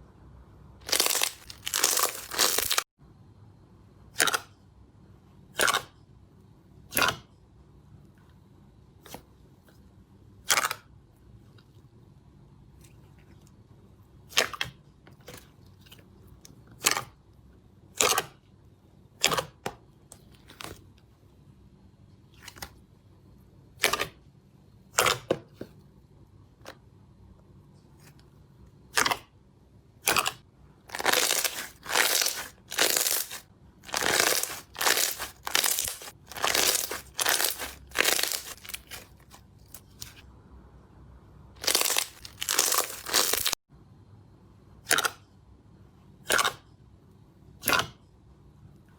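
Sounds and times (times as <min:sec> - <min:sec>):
slime popping and squishing: 0:00.8 - 0:02.9, 0:30.0 - 0:40.2, 0:41.6 - 0:43.6.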